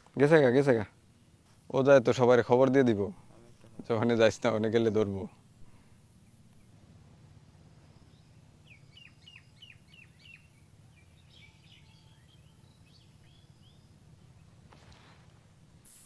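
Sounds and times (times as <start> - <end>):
faint bird calling: 5.3 - 15.3.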